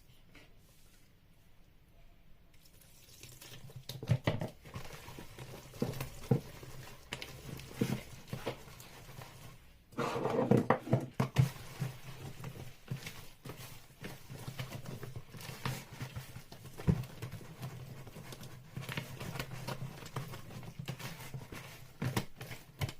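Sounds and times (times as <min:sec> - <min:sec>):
batter slapping and squelching: 0:02.6 - 0:09.8, 0:11.1 - 0:22.9.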